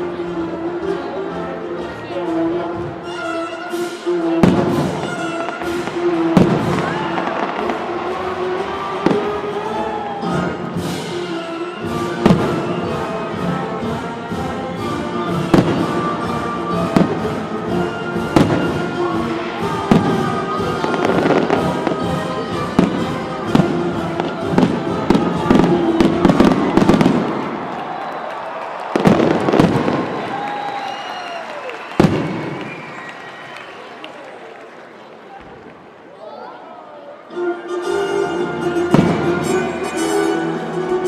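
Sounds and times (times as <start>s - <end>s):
music with sustained tones: 0.0s - 27.6s, 37.2s - 41.0s
fireworks bangs: 4.4s - 9.6s, 18.2s - 28.0s, 28.8s - 30.8s, 31.8s - 33.2s, 38.9s - 39.7s.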